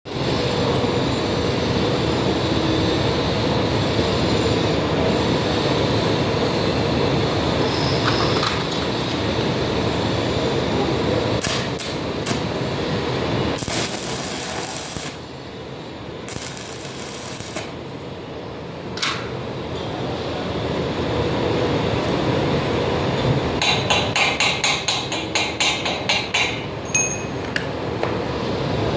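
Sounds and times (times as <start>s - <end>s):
arc welding crackle: 11.4s - 15.5s, 16.2s - 17.9s.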